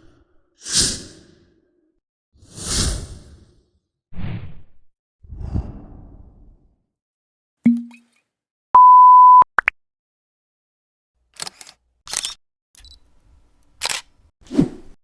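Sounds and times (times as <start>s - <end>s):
censor beep tone: 8.8s - 9.5s.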